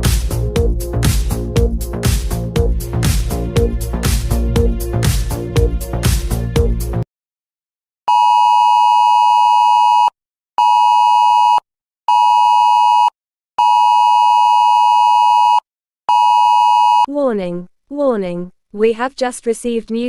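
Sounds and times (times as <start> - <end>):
music: 0.0 - 7.0.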